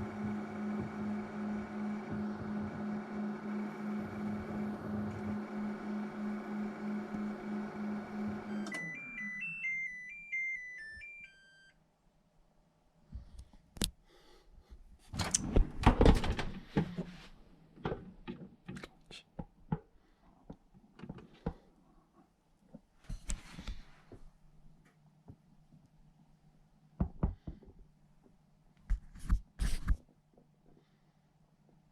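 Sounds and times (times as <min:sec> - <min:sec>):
microwave oven humming: 0:00.0 - 0:11.6
microwave beeping melody: 0:00.0 - 0:11.8
clunks and clicks: 0:15.1 - 0:17.1.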